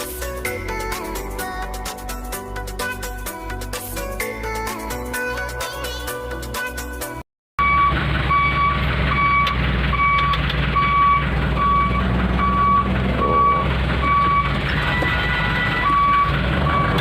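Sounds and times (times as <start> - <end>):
reversing alarm beeping: 7.6 - 17.0
truck diesel engine running: 7.6 - 17.0.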